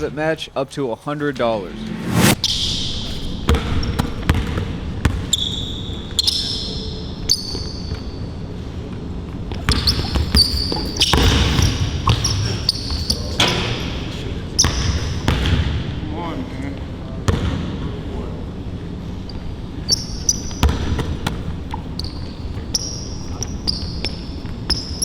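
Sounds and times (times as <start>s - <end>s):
sneakers squeaking: 3.5s - 8.3s, 9.5s - 13.6s, 19.3s - 25.0s
basketball bouncing on hard court: 9.6s - 12.5s, 20.6s - 21.5s.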